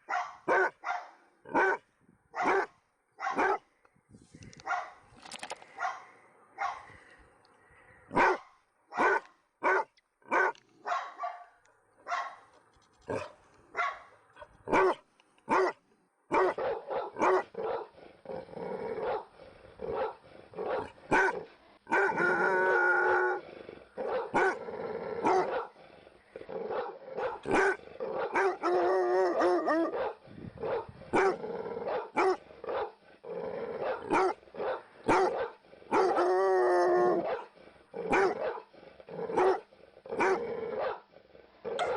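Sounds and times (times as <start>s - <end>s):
dogs barking: 0.1s - 1.8s, 2.4s - 3.6s, 8.2s - 12.4s, 14.7s - 18.0s, 33.8s - 36.2s.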